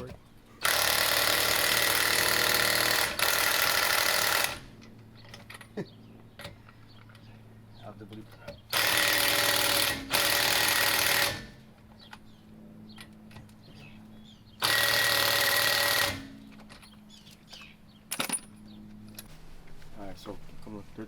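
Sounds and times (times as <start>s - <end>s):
impact wrench hammering: 8.7s - 11.6s, 14.6s - 16.3s.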